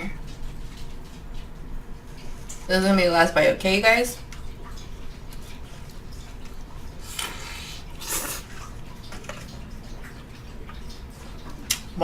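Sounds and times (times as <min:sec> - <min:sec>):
noodles slurping: 0:07.0 - 0:09.9
wet mouth clicks: 0:11.4 - 0:11.9.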